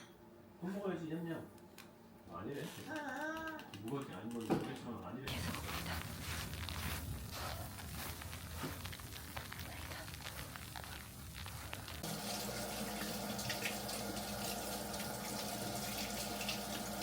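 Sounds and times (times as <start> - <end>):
tap running into sink: 12.0 - 17.0.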